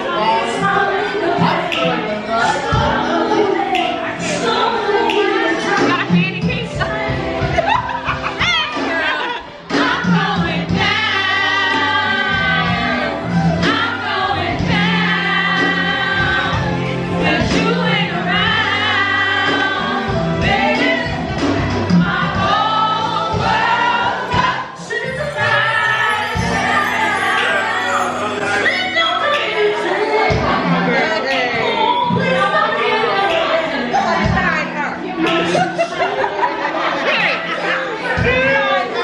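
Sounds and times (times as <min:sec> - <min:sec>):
choir singing: 0:08.7 - 0:21.1, 0:21.9 - 0:34.0.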